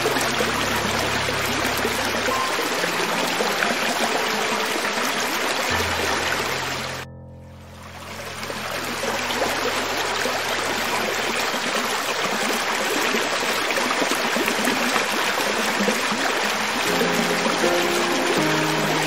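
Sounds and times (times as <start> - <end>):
soft background music: 0.0 - 11.9, 16.7 - 19.0
creek water flowing over rocks: 0.0 - 19.0.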